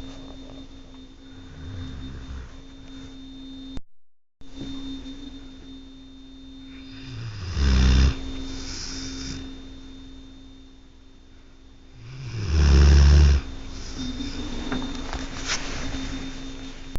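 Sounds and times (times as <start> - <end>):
dog snoring: 1.2 - 3.0, 6.7 - 9.6, 11.9 - 15.3.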